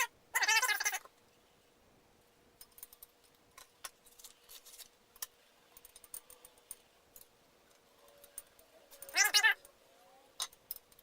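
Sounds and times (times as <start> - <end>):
small parts clicking: 2.6 - 11.0.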